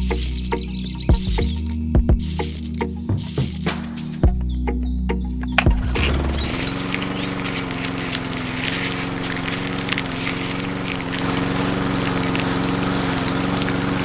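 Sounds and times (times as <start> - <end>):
sharp clicks: 5.4 - 13.9
small motor humming: 5.5 - 14.0.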